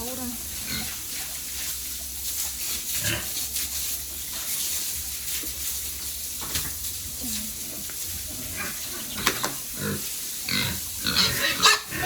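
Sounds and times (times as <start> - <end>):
pigs grunting: 2.9 - 3.4, 7.1 - 12.0.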